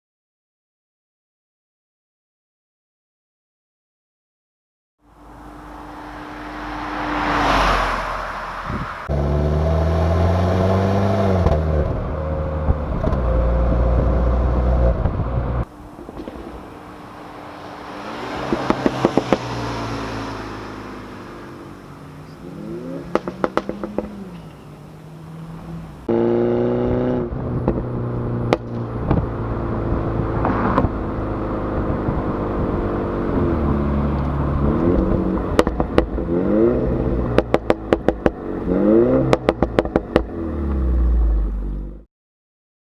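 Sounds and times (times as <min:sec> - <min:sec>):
car engine accelerating: 0:05.0 - 0:42.0
exhaust pops and crackles: 0:23.1 - 0:24.4, 0:27.6 - 0:29.3, 0:34.2 - 0:36.3, 0:37.3 - 0:38.4, 0:39.3 - 0:40.3.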